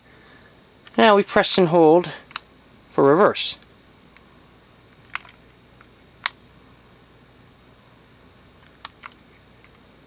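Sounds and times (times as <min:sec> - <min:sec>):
fan remote control clicks: 0:02.2 - 0:02.5, 0:04.9 - 0:06.4, 0:08.6 - 0:09.8.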